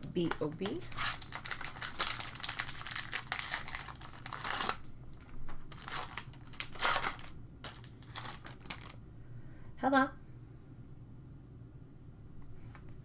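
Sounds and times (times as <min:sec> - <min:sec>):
wrapper tearing and crinkling: 0:00.3 - 0:09.0.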